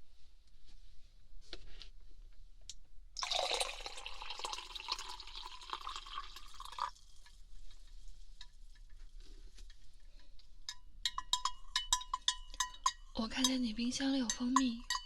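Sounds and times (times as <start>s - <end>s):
water pouring into a cup: 3.2s - 7.4s.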